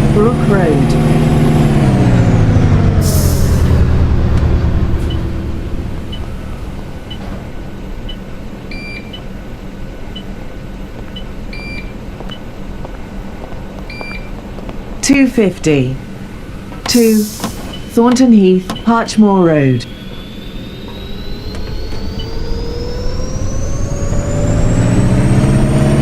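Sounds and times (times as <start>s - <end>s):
bus engine: 0.0s - 26.0s
air brake hiss: 3.0s - 3.9s, 16.9s - 17.9s
two-tone beep: 5.0s - 6.4s, 16.9s - 23.7s
small beeps: 13.9s - 14.3s, 16.9s - 23.7s.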